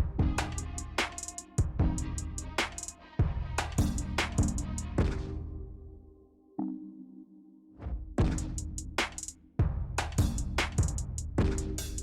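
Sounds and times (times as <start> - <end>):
electronic drum beat: 0.0 - 5.4, 8.2 - 12.0.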